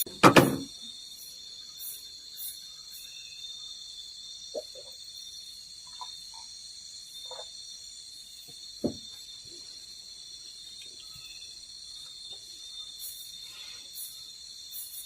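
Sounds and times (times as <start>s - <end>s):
crickets and insects chirping: 0.0s - 15.0s
sharp thump: 0.2s - 0.7s
faint knocks: 8.8s - 9.1s.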